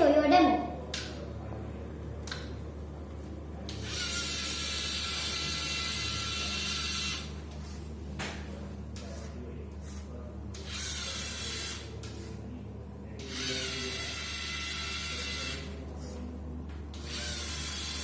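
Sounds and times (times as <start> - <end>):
toy motors whirring: 3.7 - 7.3, 10.6 - 12.2, 13.2 - 15.6, 17.0 - 18.0.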